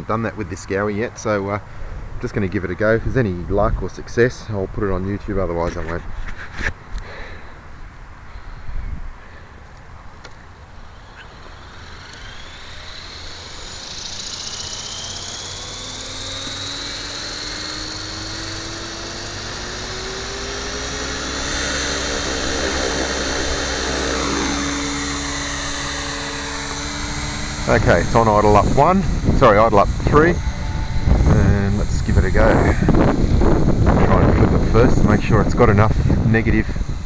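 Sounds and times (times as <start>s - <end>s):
rc helicopter motor and rotor whine: 8.5s - 37.0s.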